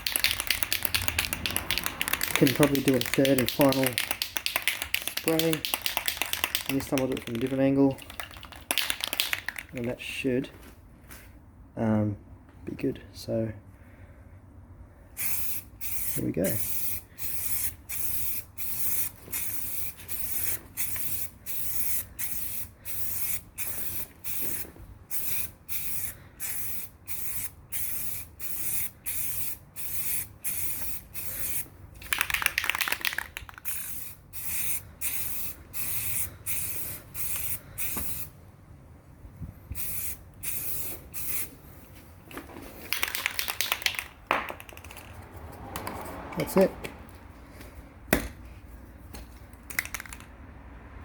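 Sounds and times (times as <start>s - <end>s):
aerosol can spraying: 0.0s - 9.8s, 15.2s - 38.3s, 39.8s - 41.5s.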